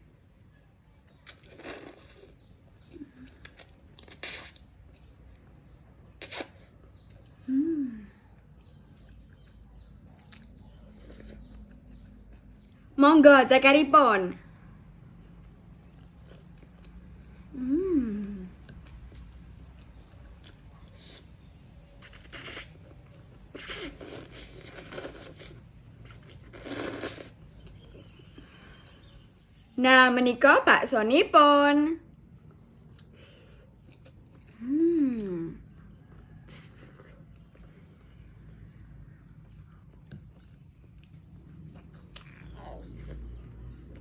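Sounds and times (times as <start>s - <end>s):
wet sucking and chewing: 1.1s - 7.4s, 18.5s - 29.2s, 32.1s - 44.0s
bird chirping: 8.5s - 12.8s, 26.2s - 31.0s, 37.2s - 44.0s.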